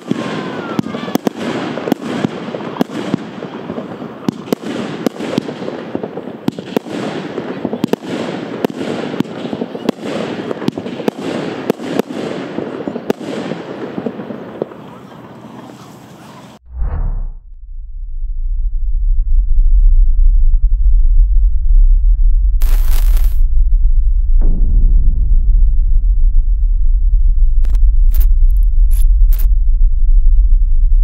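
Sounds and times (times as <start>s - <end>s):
firework reports: 0.0s - 17.4s, 22.6s - 23.4s
firework hiss and crackle: 22.6s - 23.4s.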